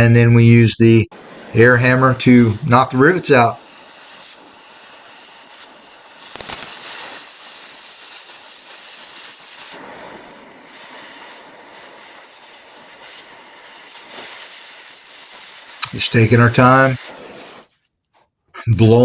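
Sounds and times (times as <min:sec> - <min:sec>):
cutting torch hissing: 0:01.1 - 0:17.8.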